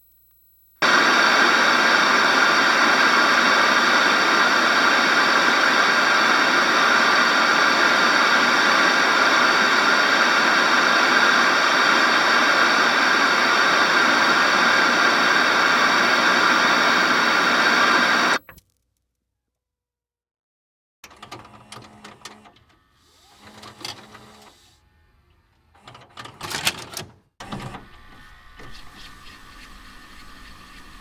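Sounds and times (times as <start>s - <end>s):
electronic static hiss: 0.0s - 18.5s
faint steady tones: 0.0s - 18.5s.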